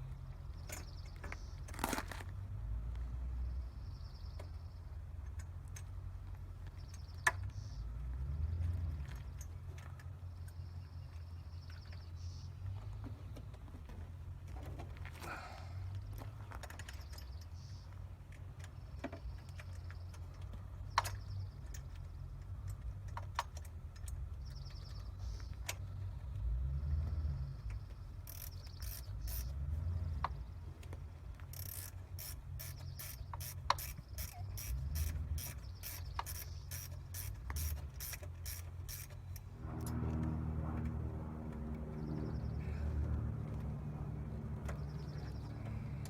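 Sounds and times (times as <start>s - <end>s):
vehicle engine running: 0.0s - 46.0s
ratchet wrench clicking: 28.2s - 29.6s, 31.4s - 39.5s.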